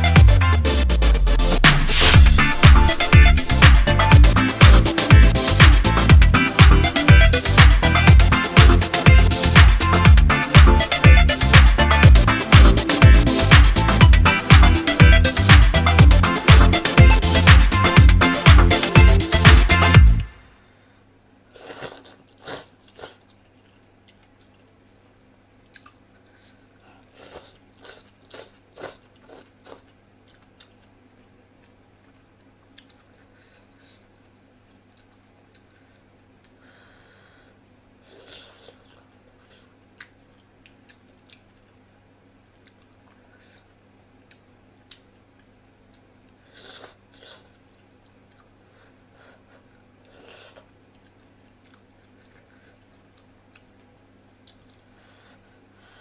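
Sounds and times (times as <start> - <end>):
low steady hum: 0.0 - 20.9
person chewing noodles: 21.5 - 24.9, 25.6 - 36.6, 38.0 - 41.8, 42.4 - 55.5.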